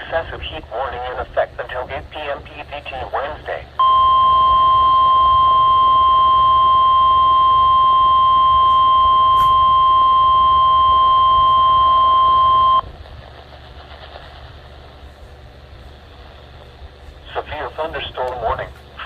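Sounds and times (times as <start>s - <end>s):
faint radio hiss: 0.0s - 3.8s, 13.0s - 19.0s
steady alarm beep: 3.8s - 12.9s.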